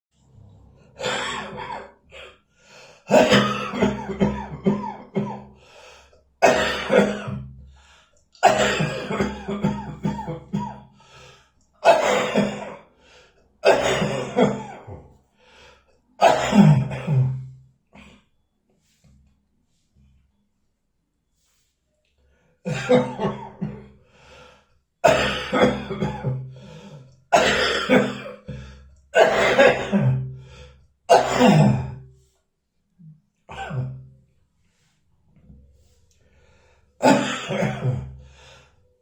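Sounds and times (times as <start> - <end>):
person coughing: 1.0 - 2.3, 3.1 - 5.6, 6.4 - 7.5, 8.4 - 10.9, 11.8 - 12.8, 13.6 - 15.1, 16.2 - 18.1, 22.7 - 23.9, 25.0 - 32.0, 33.5 - 34.0, 37.0 - 38.4.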